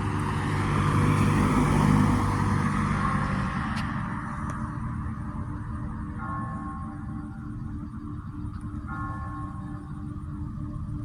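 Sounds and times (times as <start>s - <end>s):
car passing: 0.0s - 6.1s
church bell hum: 4.3s - 11.0s.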